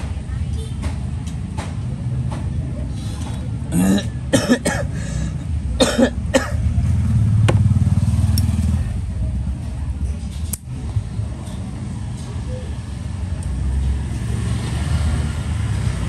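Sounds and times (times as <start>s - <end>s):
person coughing: 3.7s - 5.2s, 5.8s - 6.6s.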